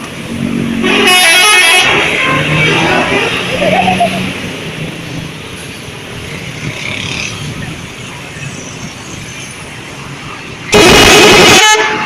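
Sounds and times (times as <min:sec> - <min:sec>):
vehicle noise: 0:00.0 - 0:12.0
bus horn blast: 0:00.8 - 0:03.4, 0:10.7 - 0:12.0.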